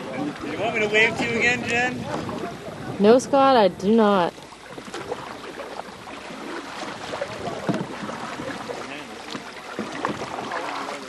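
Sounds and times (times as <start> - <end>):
water splashing around canoe hulls: 0.0 - 11.0.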